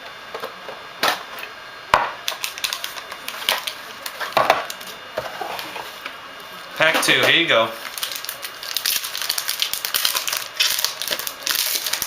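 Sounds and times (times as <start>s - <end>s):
card and wrapper rustling: 2.2s - 6.0s, 7.0s - 12.0s.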